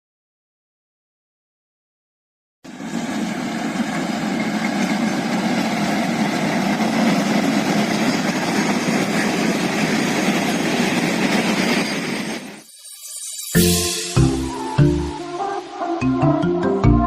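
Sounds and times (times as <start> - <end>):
electric train running: 2.7 - 16.0.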